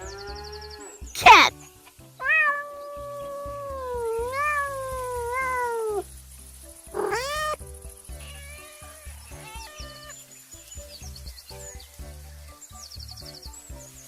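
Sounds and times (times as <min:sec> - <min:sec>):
background music: 0:00.0 - 0:14.0
cat meowing: 0:01.2 - 0:01.5, 0:02.2 - 0:06.0, 0:07.0 - 0:07.6, 0:08.2 - 0:10.1.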